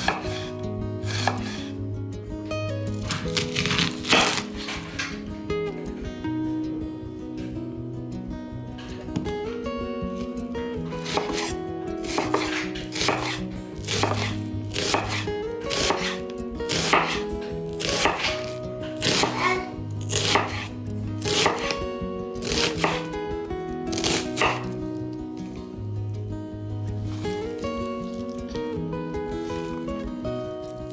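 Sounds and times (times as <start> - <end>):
knife chopping on cutting board: 0.0 - 1.7, 3.1 - 5.1, 11.0 - 17.2, 17.8 - 21.8, 22.4 - 23.1, 23.9 - 24.8
background music: 0.0 - 30.9.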